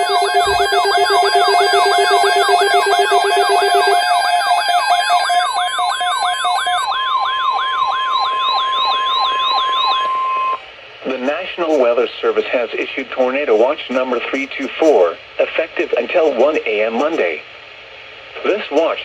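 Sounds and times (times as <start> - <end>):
pulsing electronic beeps: 0.0 - 6.9
falling siren-like sweep: 0.0 - 10.6
steady alarm tone: 0.0 - 11.8.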